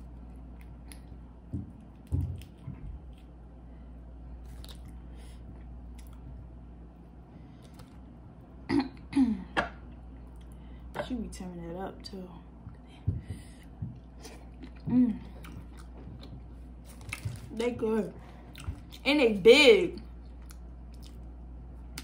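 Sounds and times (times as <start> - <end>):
clicks and smacks of eating: 0.1 - 3.4, 4.4 - 6.5, 7.6 - 8.1, 12.7 - 17.7, 18.5 - 19.0, 20.1 - 22.0.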